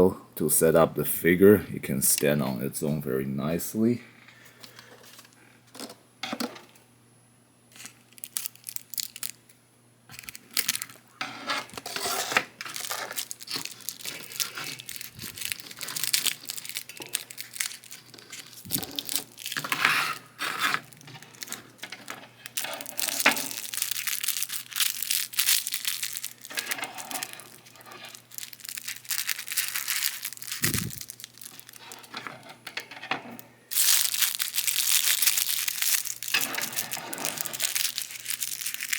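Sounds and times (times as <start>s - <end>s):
plastic packaging crinkling and tearing: 7.7s - 9.5s, 10.1s - 33.0s, 33.7s - 38.9s.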